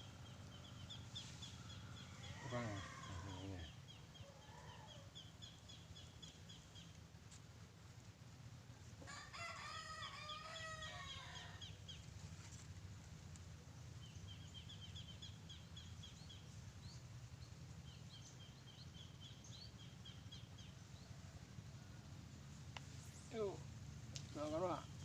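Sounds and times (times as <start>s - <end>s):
rooster crowing: 2.0s - 5.1s, 9.0s - 11.6s.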